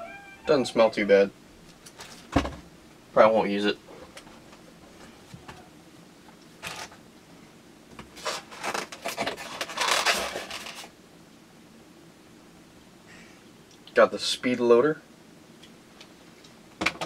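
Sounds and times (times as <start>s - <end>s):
packaging rustling: 8.1s - 10.9s.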